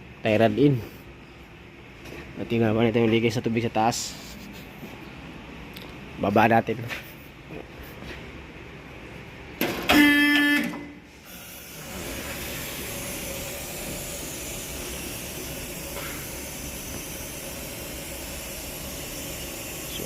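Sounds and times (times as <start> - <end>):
loud pitched tone: 9.9 - 11.0
vehicle lift hissing: 11.0 - 20.0.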